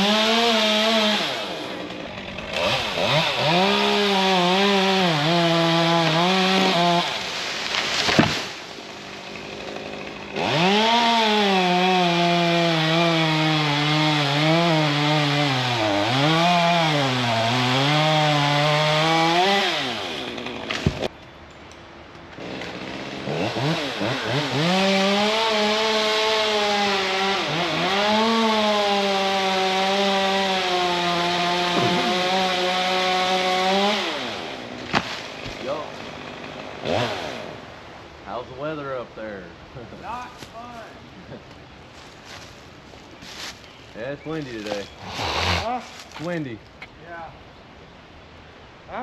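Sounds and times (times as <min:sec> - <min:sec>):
chainsaw cutting through wood: 0:00.0 - 0:21.1, 0:22.3 - 0:37.8, 0:44.4 - 0:46.4.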